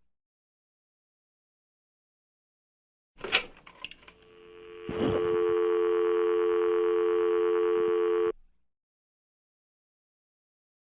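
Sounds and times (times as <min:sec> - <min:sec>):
dial tone: 0:04.2 - 0:08.4.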